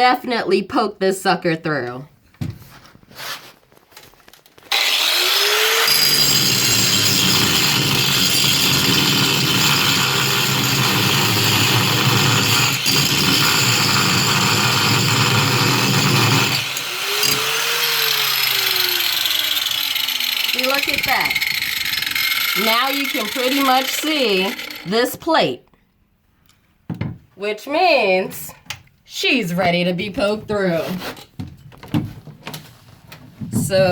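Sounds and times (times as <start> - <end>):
angle grinder whining: 4.6 - 25.2
grinder grinding steel: 4.7 - 25.2.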